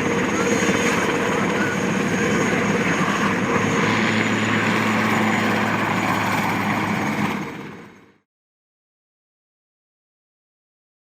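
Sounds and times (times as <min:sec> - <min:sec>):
helicopter in flight: 0:00.0 - 0:08.3.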